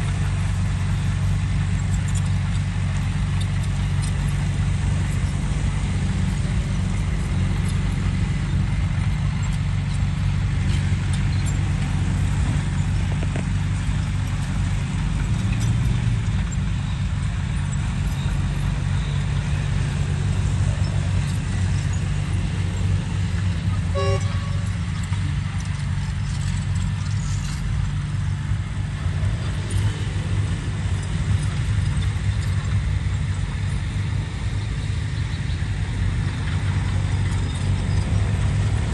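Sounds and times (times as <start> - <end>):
excavator diesel engine running: 0.0 - 38.9
clicks and rattles: 24.6 - 28.3.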